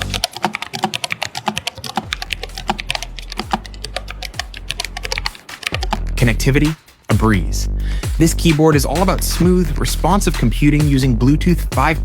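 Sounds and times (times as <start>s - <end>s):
fast mechanical keyboard typing: 0.0s - 6.5s.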